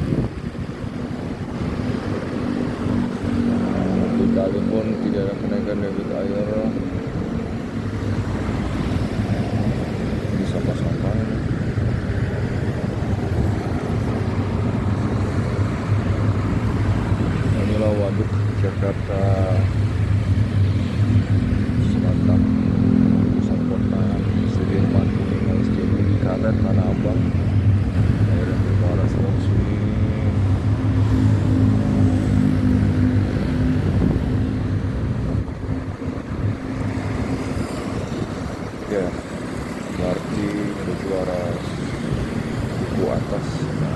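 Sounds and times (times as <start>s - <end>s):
city traffic hum: 0.0s - 43.9s.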